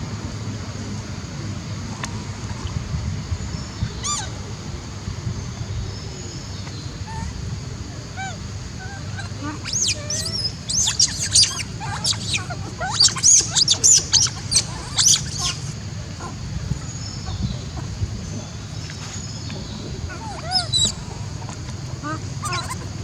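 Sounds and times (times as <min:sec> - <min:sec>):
steady low hum: 0:00.0 - 0:23.0
monkey squealing and chirping: 0:04.0 - 0:04.4, 0:08.2 - 0:17.5, 0:20.1 - 0:23.0.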